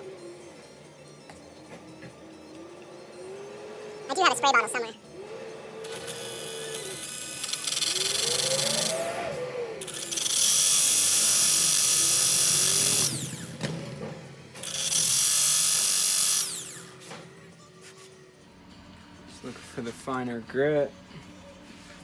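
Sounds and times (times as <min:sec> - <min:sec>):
power tool grinding metal: 0:05.6 - 0:13.7, 0:14.6 - 0:17.1.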